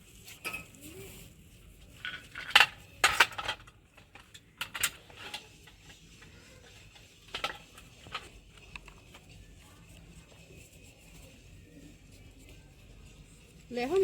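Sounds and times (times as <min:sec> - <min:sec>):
sharp clicks and clatters: 0:06.7 - 0:09.3.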